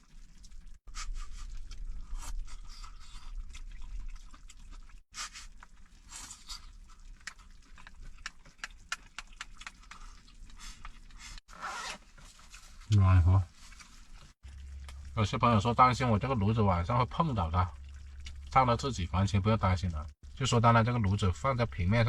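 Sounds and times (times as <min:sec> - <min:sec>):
chewing: 0:00.1 - 0:11.5, 0:12.2 - 0:15.2, 0:17.7 - 0:18.6.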